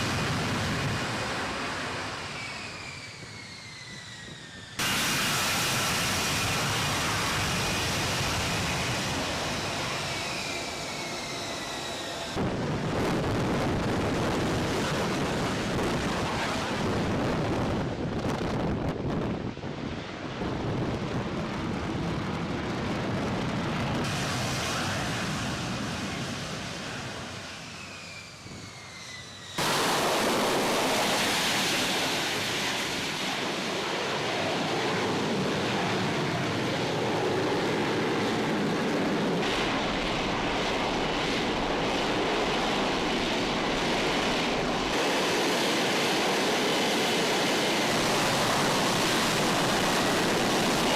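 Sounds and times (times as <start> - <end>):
fighter jet engine roar: 0.0 - 50.9
jet whine falling in pitch: 1.3 - 12.8, 24.0 - 33.5.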